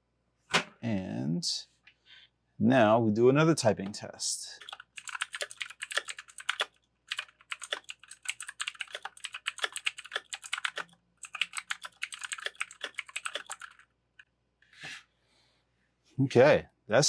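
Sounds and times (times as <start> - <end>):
fast typing on clicky keyboard: 4.6 - 13.9.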